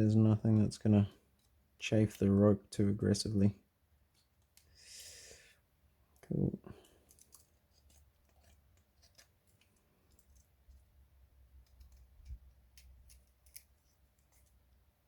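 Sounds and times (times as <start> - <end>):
faint clicks and scrapes: 6.1 - 14.8.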